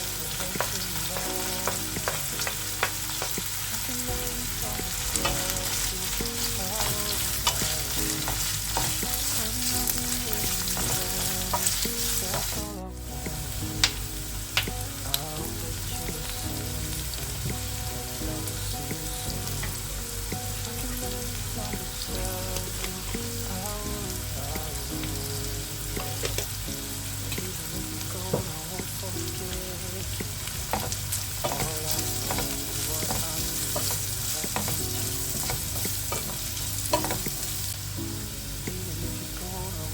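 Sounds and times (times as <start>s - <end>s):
food sizzling in a pan: 0.0s - 39.9s.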